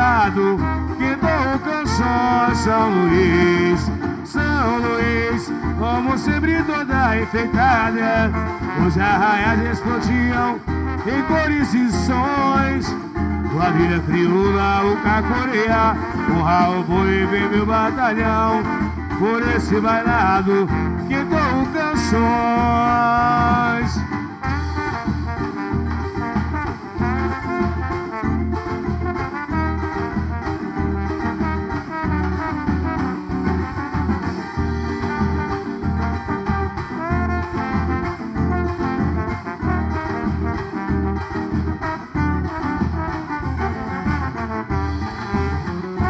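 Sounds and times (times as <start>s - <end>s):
bass: 0.0s - 46.0s
busy percussion beat: 0.0s - 46.0s
lead melody: 0.0s - 46.0s.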